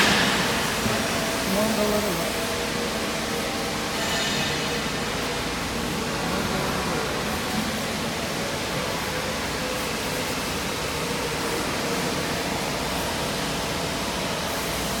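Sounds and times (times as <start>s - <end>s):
machinery running: 0.0s - 7.7s.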